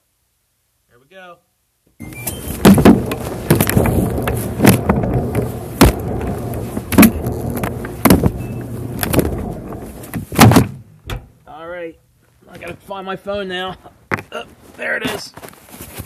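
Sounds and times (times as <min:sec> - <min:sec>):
phone banging inside drum: 0:02.0 - 0:09.8
clothes dryer drum rumbling: 0:02.4 - 0:10.6.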